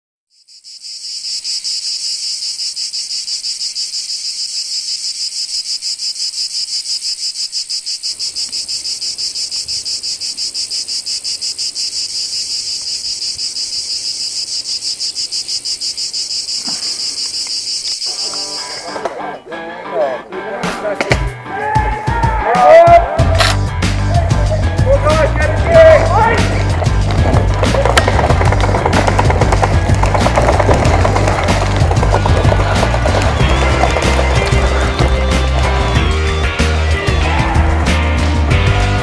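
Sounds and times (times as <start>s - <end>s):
insect trilling: 0.3s - 19.0s.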